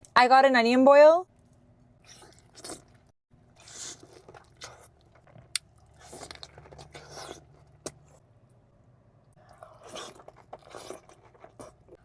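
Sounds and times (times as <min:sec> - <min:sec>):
biting and chewing food: 0:01.4 - 0:08.3, 0:09.4 - 0:12.0.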